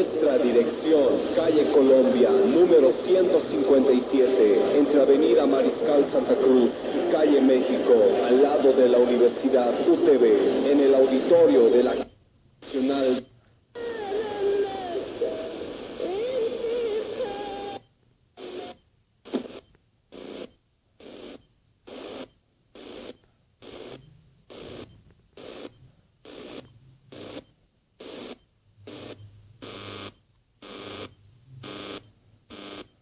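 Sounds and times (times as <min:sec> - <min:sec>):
radio static bursts: 0:00.0 - 0:13.2, 0:18.4 - 0:19.6.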